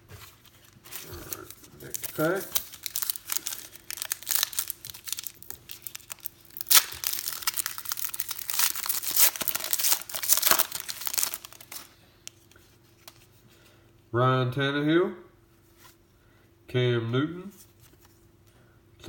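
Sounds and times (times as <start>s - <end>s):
wrapper crinkling: 0.2s - 13.2s
sharp wrapper tear: 1.0s - 11.9s.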